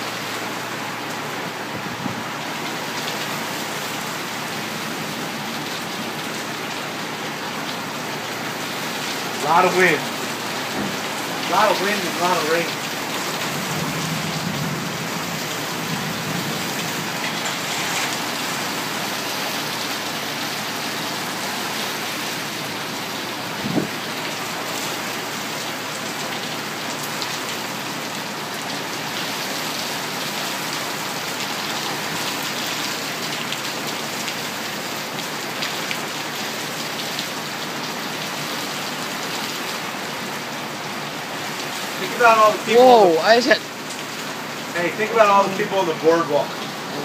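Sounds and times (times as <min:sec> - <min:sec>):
heavy rain pouring: 0:00.0 - 0:47.0
strong wind: 0:01.5 - 0:02.4, 0:22.7 - 0:24.2.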